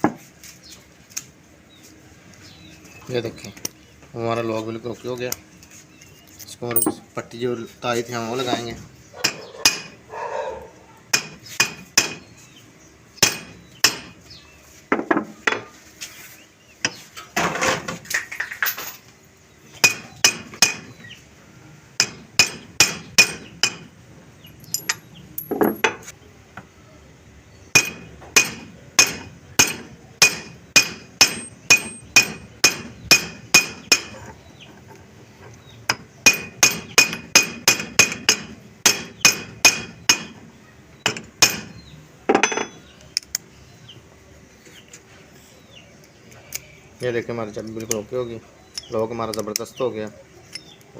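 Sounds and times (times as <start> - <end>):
hammer tapping on metal padlock: 19.8 - 20.9, 22.0 - 23.9, 27.8 - 34.2, 35.9 - 40.4.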